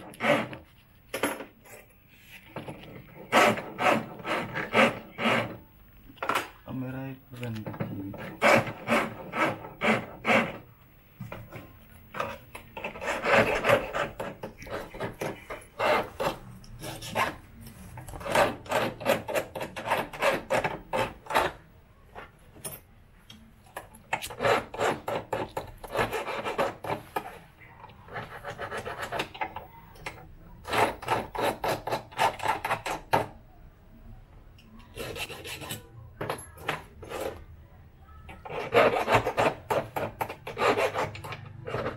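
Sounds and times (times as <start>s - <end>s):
key cutter rasping: 3.3s - 5.6s, 8.1s - 10.6s, 12.1s - 17.4s, 38.4s - 41.9s.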